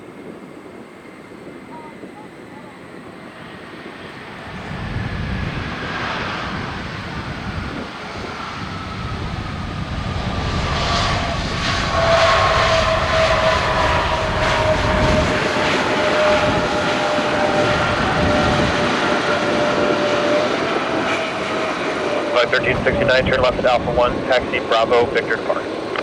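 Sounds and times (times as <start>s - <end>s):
jet engines rushing: 0.0s - 26.0s
engine whine falling in pitch: 8.6s - 25.3s.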